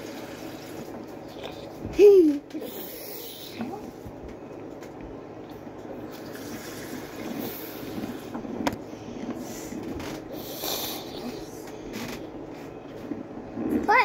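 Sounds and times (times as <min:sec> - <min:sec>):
water running from a tap: 0:00.0 - 0:01.4, 0:06.1 - 0:07.9.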